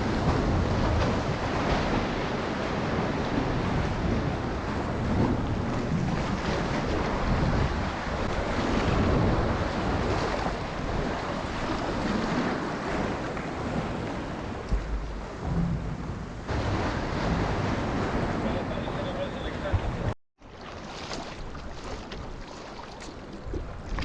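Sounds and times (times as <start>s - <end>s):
wind buffeting microphone: 0.0s - 20.1s
ocean waves washing: 0.0s - 24.0s
short low thump: 14.7s - 16.5s.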